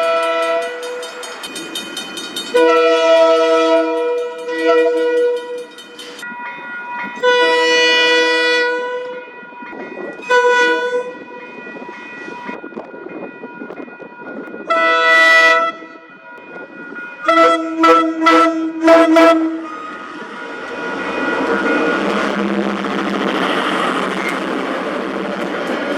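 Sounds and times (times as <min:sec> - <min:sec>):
train air horn blasts: 0:00.0 - 0:01.2, 0:02.5 - 0:05.7, 0:07.2 - 0:09.3, 0:10.2 - 0:11.2, 0:14.7 - 0:16.0, 0:17.2 - 0:20.0
train running noise: 0:00.0 - 0:25.9.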